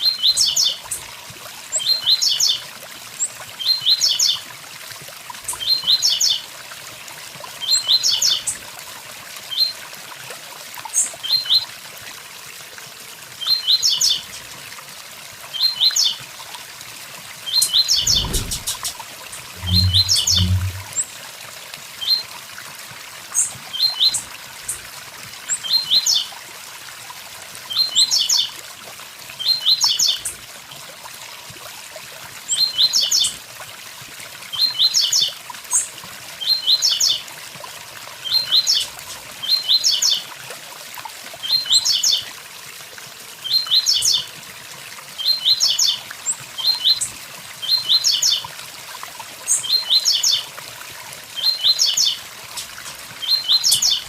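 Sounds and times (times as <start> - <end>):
bird singing short phrase: 17.5 - 21.0
waterfall rushing: 17.5 - 21.0.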